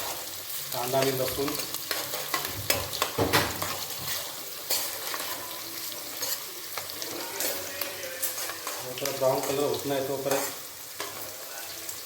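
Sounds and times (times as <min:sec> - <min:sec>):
spatula scraping a pan: 0:00.0 - 0:11.8
onion and garlic sizzling in oil: 0:00.0 - 0:12.0.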